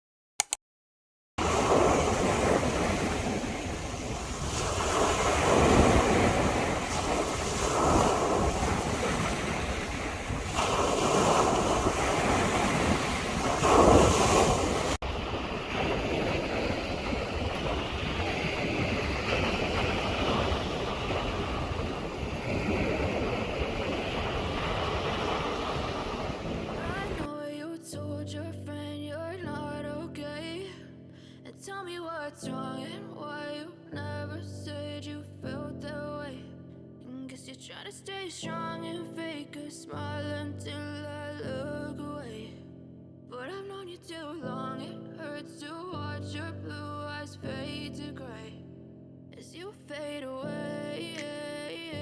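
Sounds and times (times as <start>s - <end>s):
sea waves breaking on shore: 1.4s - 27.3s
wind buffeting microphone: 1.4s - 27.3s.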